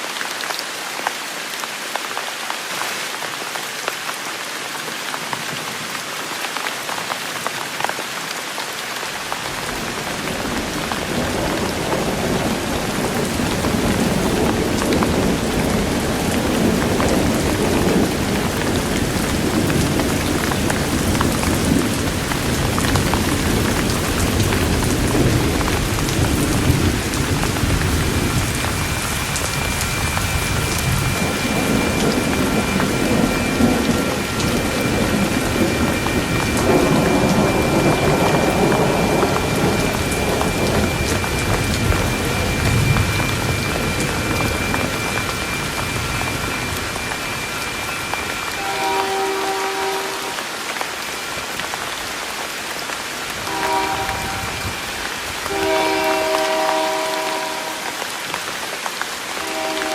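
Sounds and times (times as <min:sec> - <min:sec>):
steady rain falling: 0:00.0 - 0:59.9
thunder rumbling: 0:09.5 - 0:50.4, 0:53.4 - 0:57.8.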